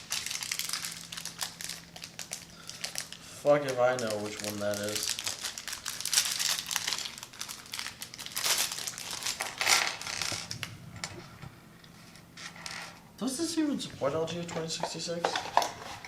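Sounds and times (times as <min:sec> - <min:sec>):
plastic bags crinkling: 0:00.0 - 0:10.8.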